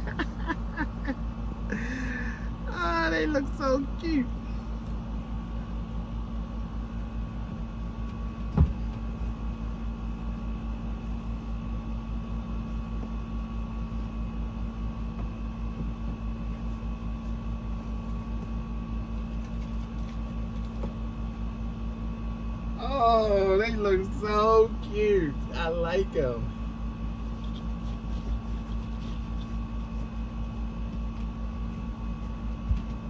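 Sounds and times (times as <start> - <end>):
pulsing machine hum: 0.0 - 19.8.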